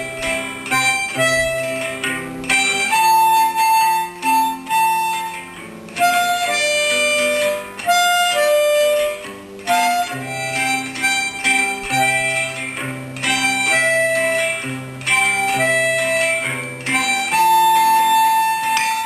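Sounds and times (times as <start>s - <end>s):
lead instrument melody: 0.0s - 19.0s
plucked string accompaniment: 0.0s - 19.0s.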